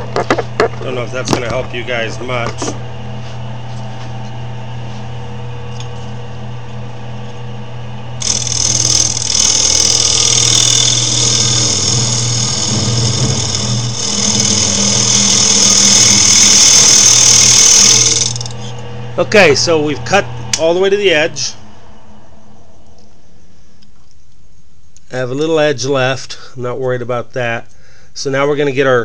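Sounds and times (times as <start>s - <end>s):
lathe motor humming: 8.2s - 20.8s.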